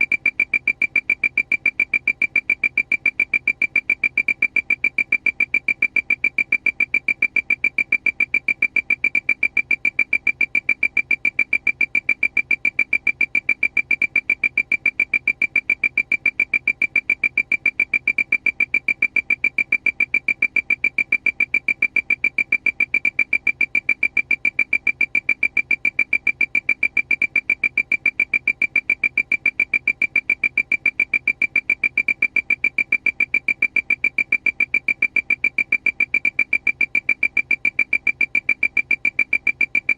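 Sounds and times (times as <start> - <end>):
rapid high-pitched alarm beeps: 0.0 - 39.9.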